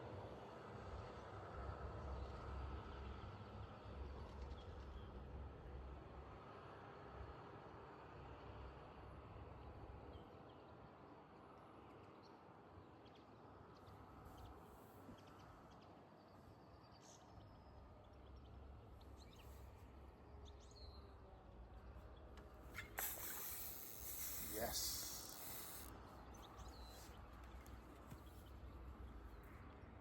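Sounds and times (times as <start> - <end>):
short bird chirps: 22.7 - 27.2.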